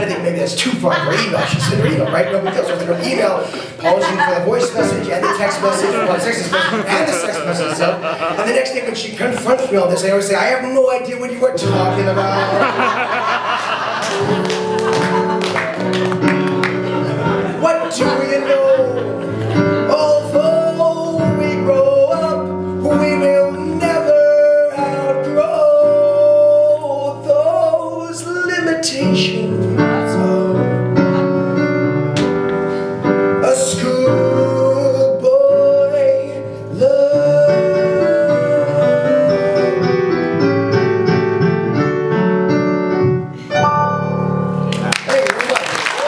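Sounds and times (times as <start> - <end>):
instrumental accompaniment: 11.5 - 45.0.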